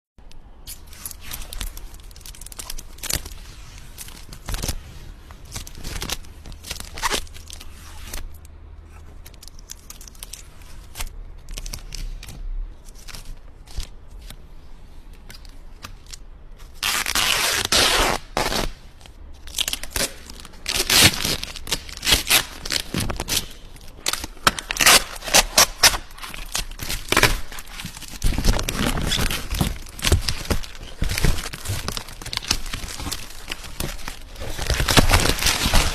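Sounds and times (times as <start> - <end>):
packaging tearing and crinkling: 0.7 - 8.3, 16.6 - 18.8, 19.4 - 35.9.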